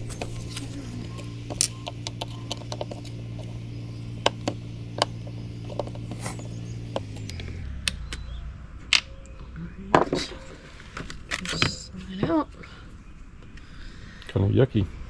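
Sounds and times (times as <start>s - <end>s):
plastic parts clicking: 0.0s - 7.6s.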